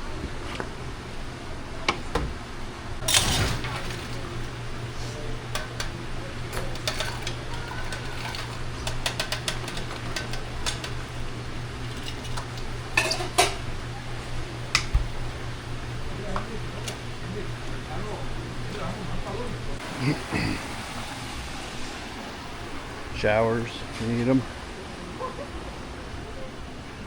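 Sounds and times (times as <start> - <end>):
ice machine humming: 0.0 - 27.0
ice clinking: 6.6 - 11.0.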